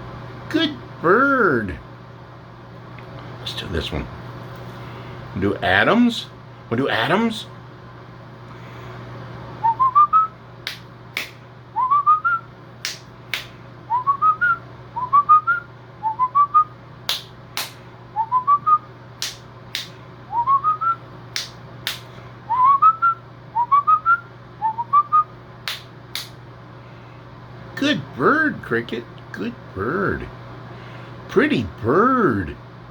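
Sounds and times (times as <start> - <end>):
person whistling: 9.6 - 10.3, 11.8 - 12.4, 13.9 - 16.7, 18.2 - 18.8, 20.3 - 21.0, 22.5 - 25.3.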